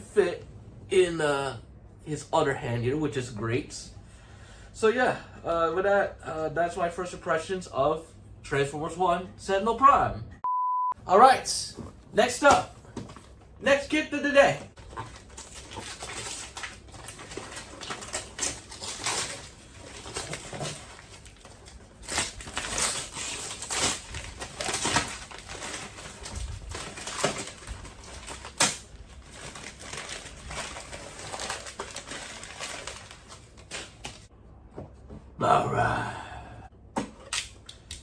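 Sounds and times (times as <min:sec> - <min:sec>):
packaging rustling and scraping: 0:14.7 - 0:34.3.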